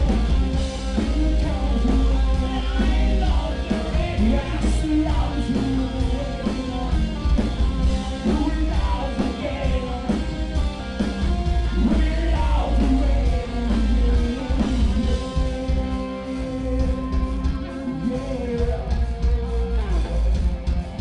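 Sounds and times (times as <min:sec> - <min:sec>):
person singing: 0:00.0 - 0:07.4, 0:08.0 - 0:10.4, 0:11.7 - 0:20.4
rock band playing: 0:00.0 - 0:21.0.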